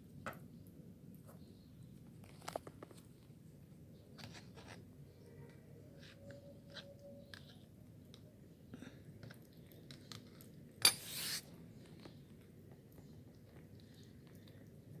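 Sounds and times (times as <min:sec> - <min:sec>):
kitten chewing food: 0:11.8 - 0:15.0.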